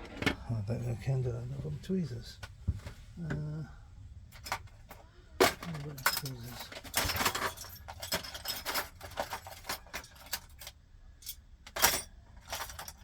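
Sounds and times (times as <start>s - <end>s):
metal tools clattering: 4.3s - 13.0s
small metal tools clinking: 4.4s - 13.0s.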